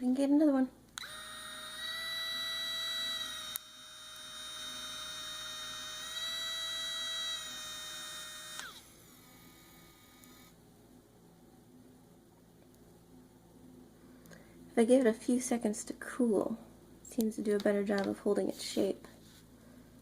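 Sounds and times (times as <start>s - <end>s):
faint hum: 0.0s - 20.0s
small motor whining: 1.0s - 10.6s.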